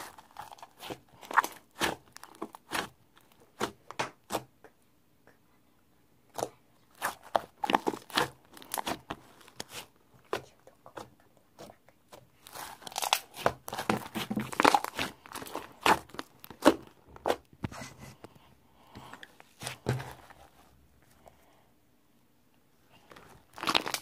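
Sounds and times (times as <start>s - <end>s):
crunching and crinkling handling noises: 0.0s - 4.0s, 6.4s - 17.5s, 18.1s - 21.2s, 22.9s - 24.0s.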